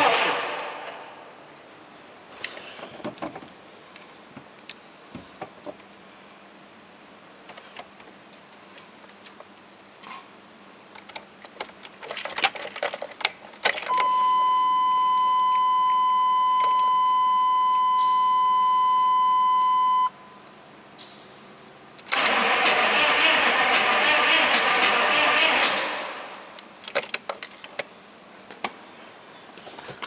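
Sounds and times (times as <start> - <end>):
keys rattling in ignition: 11.0 - 14.0
steady warning tone: 13.9 - 20.4, 22.1 - 26.6
starter cranking engine: 22.1 - 25.0.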